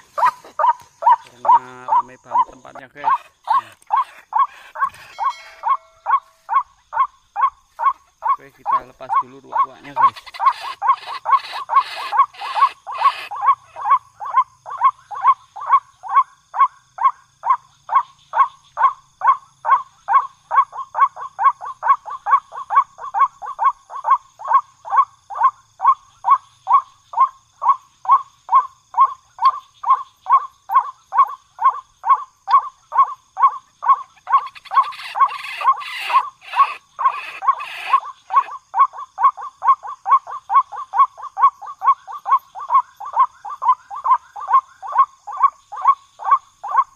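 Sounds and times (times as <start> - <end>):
waterhen calling: 0.0 - 15.8, 28.6 - 46.9.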